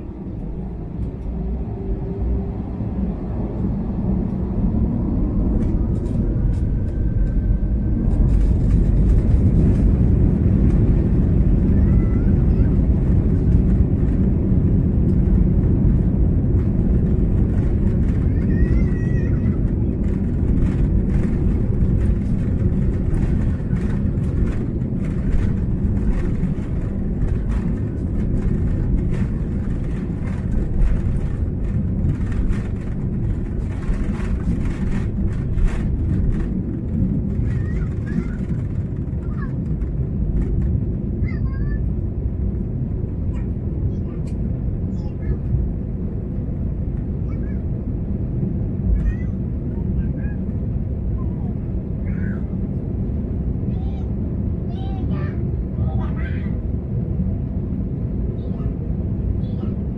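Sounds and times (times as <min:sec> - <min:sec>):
airliner engine rumble in cabin: 0:00.0 - 0:59.9.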